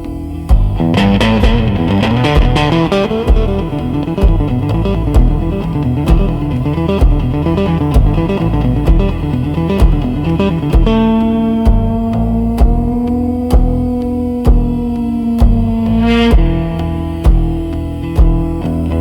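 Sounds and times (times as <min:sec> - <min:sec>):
plucked blues guitar: 0:00.0 - 0:19.0
steady beat: 0:00.0 - 0:19.0
long held note: 0:11.4 - 0:17.7.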